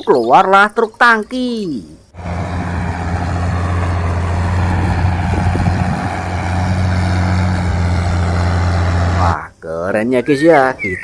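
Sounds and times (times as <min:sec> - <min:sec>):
truck engine idling: 0:02.2 - 0:09.4.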